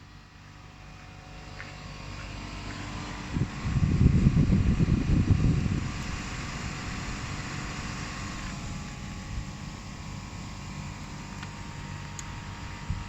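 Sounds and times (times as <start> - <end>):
air conditioning units droning: 0.0 - 13.0
gusty low rumble: 2.5 - 10.6, 11.3 - 13.0.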